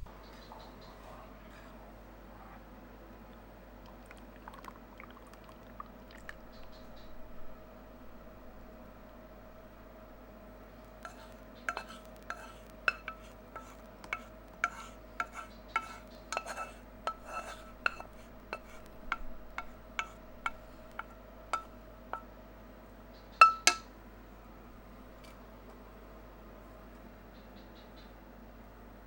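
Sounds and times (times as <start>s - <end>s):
spoon clinking in a glass: 23.4s - 23.8s.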